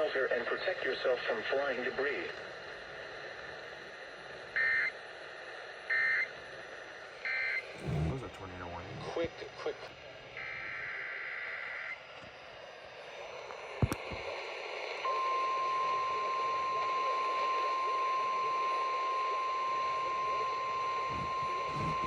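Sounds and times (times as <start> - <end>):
radio static hiss: 0.0 - 12.2, 12.9 - 22.0
steady warning alarm tone: 7.3 - 9.3, 15.1 - 22.0.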